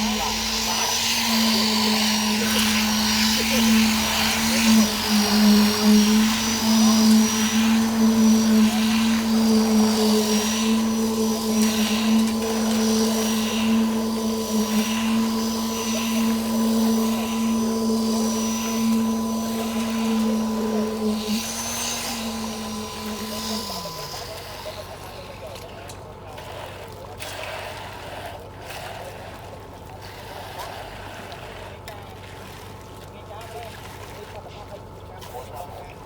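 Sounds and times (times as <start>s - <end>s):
machine motor high hum: 0.0s - 25.0s.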